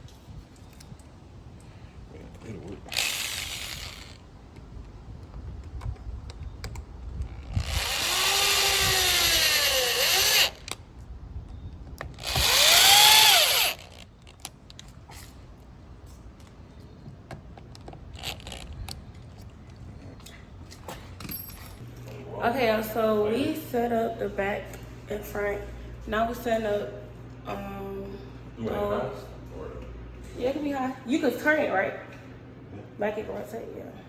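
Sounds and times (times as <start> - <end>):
power drill running: 2.9 - 4.2, 7.4 - 10.8, 12.2 - 14.1, 18.2 - 18.7.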